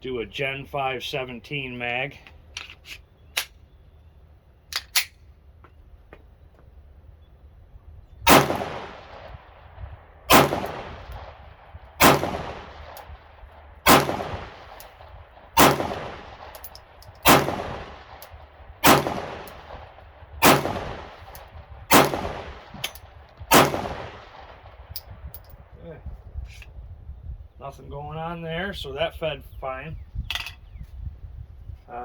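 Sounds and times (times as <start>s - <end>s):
pistol shots with echo: 8.3s - 24.9s.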